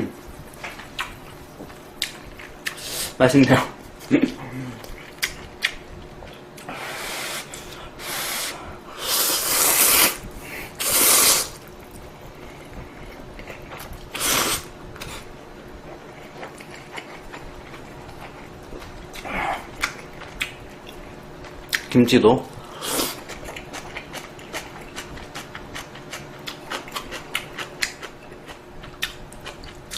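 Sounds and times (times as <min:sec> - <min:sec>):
noodles being slurped: 0:09.0 - 0:10.2, 0:10.8 - 0:11.6.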